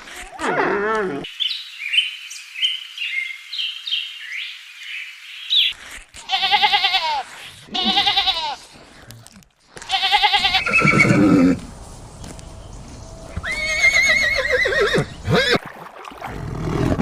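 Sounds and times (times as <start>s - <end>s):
goat bleating: 6.2s - 8.8s, 9.8s - 11.3s.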